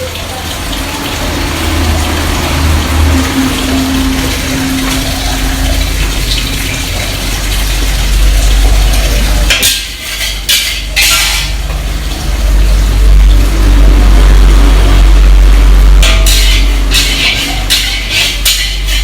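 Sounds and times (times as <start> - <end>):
pots and utensils clinking: 0.0 - 12.8, 15.9 - 19.0
steady low rumble: 12.3 - 17.0.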